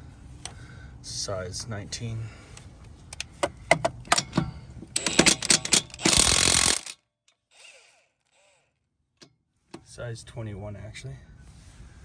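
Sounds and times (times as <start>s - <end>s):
socket ratchet clicking: 5.0s - 7.0s.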